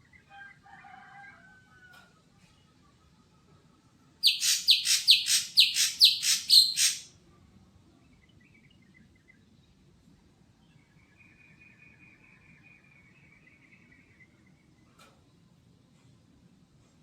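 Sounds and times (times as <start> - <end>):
bird calling sharp high notes: 4.2 - 7.1.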